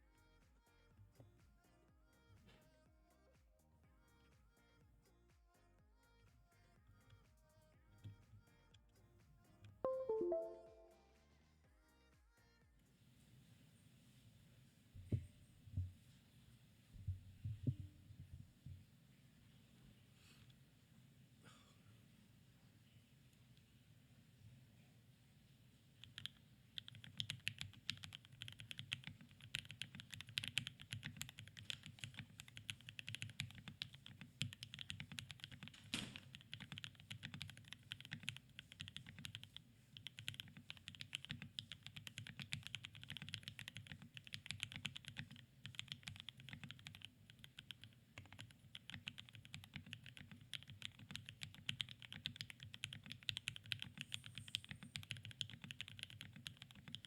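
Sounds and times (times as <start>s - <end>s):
fast typing on mechanical keyboard: 26.0s - 57.0s.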